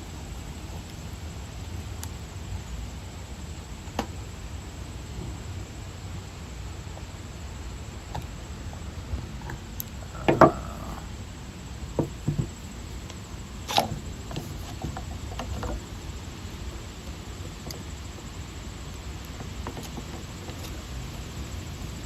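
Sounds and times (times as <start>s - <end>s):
low steady hum: 0.0s - 22.0s
pump parts knocking and clicking: 9.5s - 11.0s.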